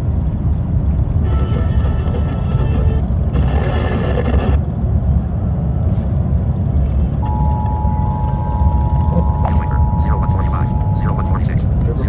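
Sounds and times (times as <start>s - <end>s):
steady low rumble: 0.0s - 12.0s
two-tone attention signal: 7.2s - 11.6s.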